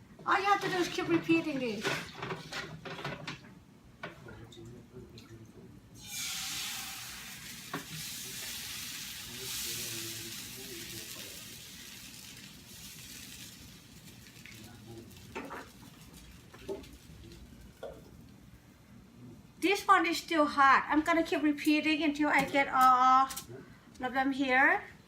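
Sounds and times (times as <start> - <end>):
rice batter sizzling in a pan: 6.0 - 18.4.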